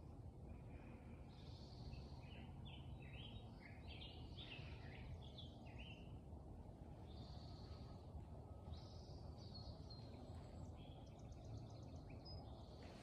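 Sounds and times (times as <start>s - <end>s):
low background rumble: 0.0s - 13.0s
songbirds whistling and trilling: 0.5s - 13.0s.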